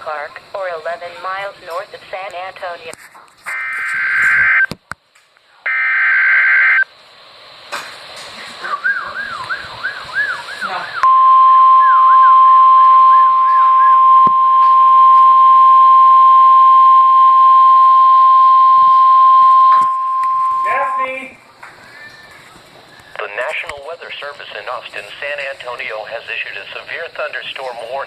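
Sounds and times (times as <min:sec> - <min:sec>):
harsh data bursts: 0:03.5 - 0:04.7, 0:05.7 - 0:06.8, 0:10.6 - 0:21.4
loud steady alarm tone: 0:03.5 - 0:04.7, 0:05.7 - 0:06.9, 0:09.2 - 0:21.4.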